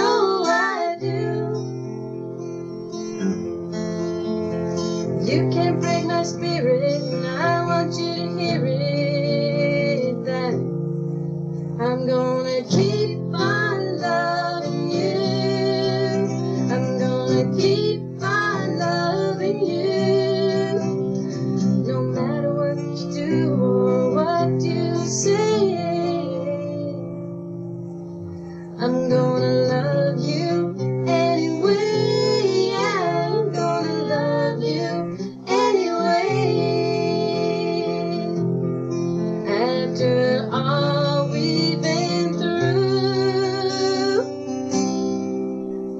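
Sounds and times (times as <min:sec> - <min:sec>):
person singing long notes: 0:00.0 - 0:01.7, 0:11.9 - 0:27.2, 0:28.4 - 0:38.4
acoustic guitar: 0:00.0 - 0:45.9.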